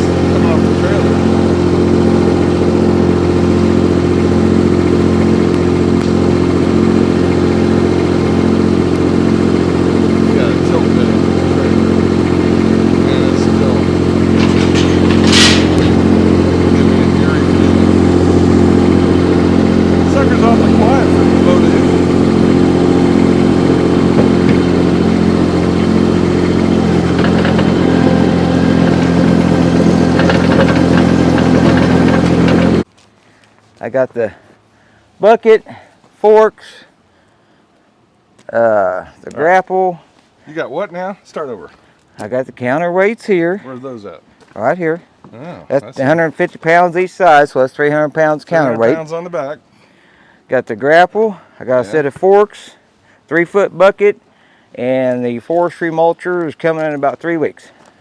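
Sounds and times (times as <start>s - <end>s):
track loader engine running: 0.0s - 32.9s.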